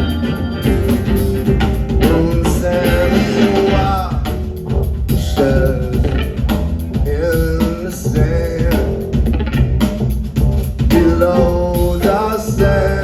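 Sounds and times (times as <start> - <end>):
pitch-bending melodic line: 0.0 - 4.1
bass line: 0.0 - 13.0
drum kit beat: 0.0 - 13.0.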